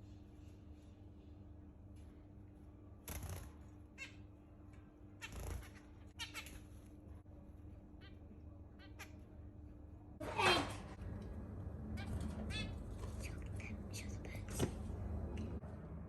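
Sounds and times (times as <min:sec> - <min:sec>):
zebra finches calling: 0:05.2 - 0:06.6.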